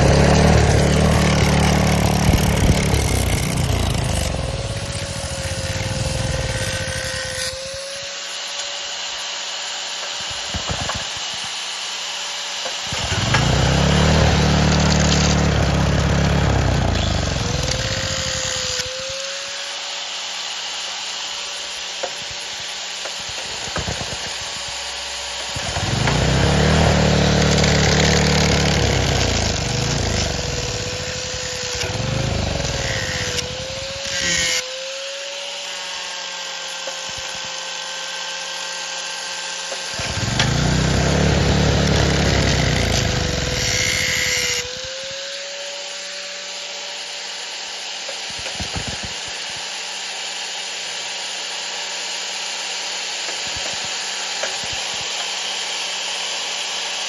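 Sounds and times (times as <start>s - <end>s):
power tool whining: 0.0s - 9.4s, 12.6s - 19.8s, 21.1s - 38.6s, 39.5s - 46.8s.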